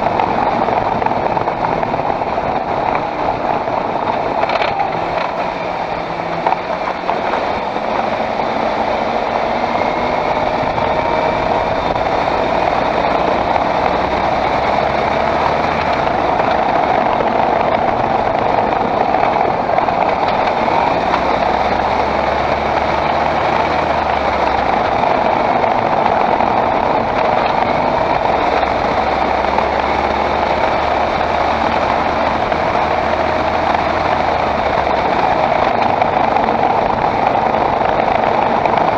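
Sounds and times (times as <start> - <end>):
car engine and road noise: 0.0 - 38.9
low hum: 0.0 - 38.9.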